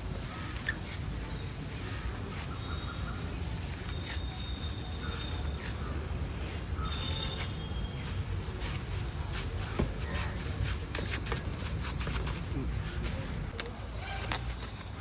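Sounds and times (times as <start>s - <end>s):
traffic rumble: 0.0s - 15.0s
light clicks and clatters: 10.8s - 15.0s.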